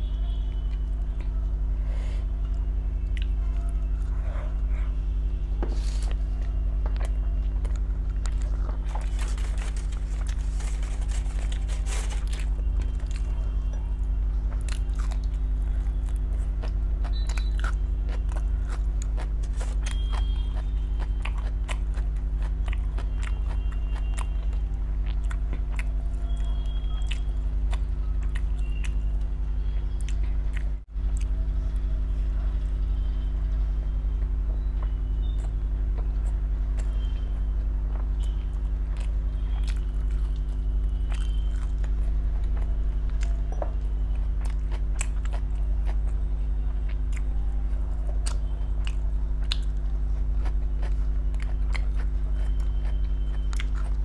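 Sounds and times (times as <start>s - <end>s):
low electrical hum: 0.0s - 54.0s
chewing and biting: 5.6s - 13.8s, 14.4s - 31.4s, 37.9s - 54.0s.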